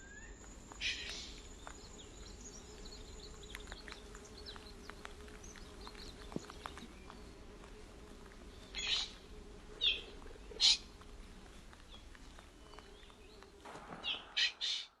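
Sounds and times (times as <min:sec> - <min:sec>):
bird short sharp calls: 0:13.9 - 0:15.0.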